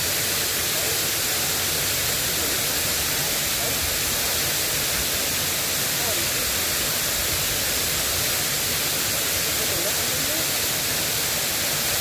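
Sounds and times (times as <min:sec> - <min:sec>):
light rain hissing: 0:00.0 - 0:12.0.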